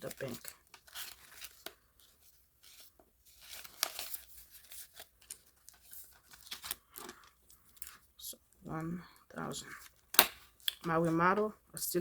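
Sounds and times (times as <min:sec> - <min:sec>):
paper banknotes rustling: 0:00.0 - 0:08.0.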